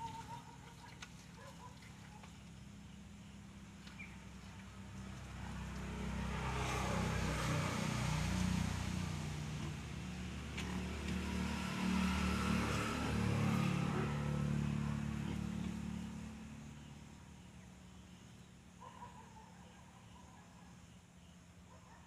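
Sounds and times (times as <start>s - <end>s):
vehicle engine running: 2.2s - 18.8s.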